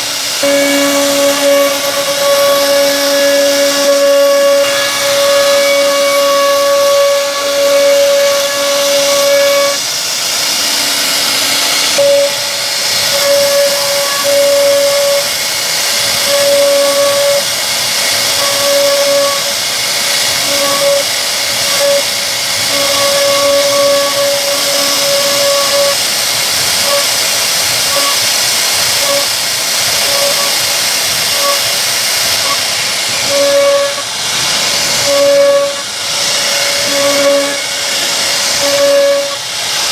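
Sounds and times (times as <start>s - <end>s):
router cutting wood: 0.0s - 39.9s.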